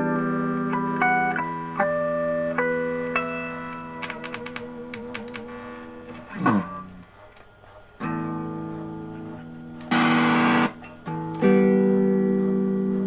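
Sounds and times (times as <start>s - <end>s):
electric guitar through effects pedal: 9.8s - 13.0s.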